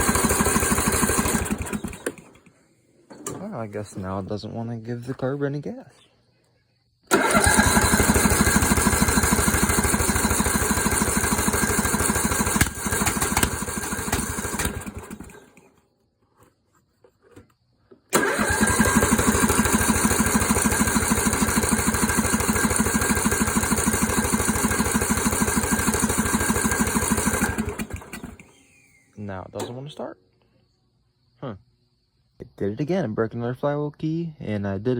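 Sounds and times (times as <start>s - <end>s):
engine cranking by electric starter: 0.0s - 3.8s, 7.0s - 15.8s, 18.0s - 29.9s.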